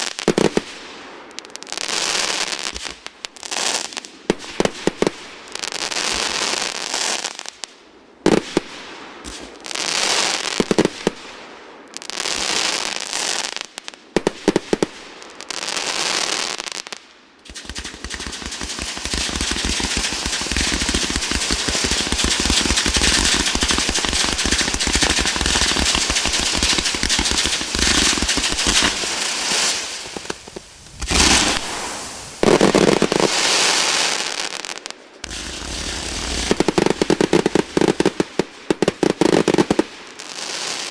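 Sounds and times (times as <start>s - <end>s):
fireworks crackling: 0.0s - 7.7s, 8.3s - 40.9s
rapid firework bangs: 17.4s - 40.9s
firework shells bursting: 17.6s - 34.4s.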